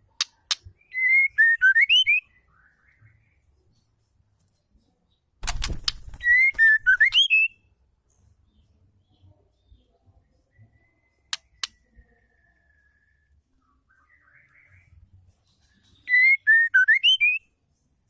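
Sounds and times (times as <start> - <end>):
bird sharp clicks: 5.4 - 7.3, 11.3 - 11.8
bird whistled phrase: 16.1 - 17.4.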